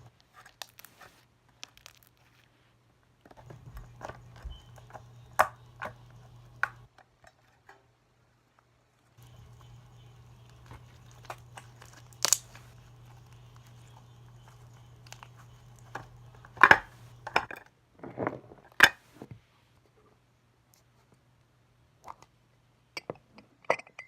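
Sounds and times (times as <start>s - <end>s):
slime crackling and popping: 0.4s - 2.5s, 10.5s - 13.8s
steady low hum: 3.3s - 6.9s, 9.2s - 17.6s.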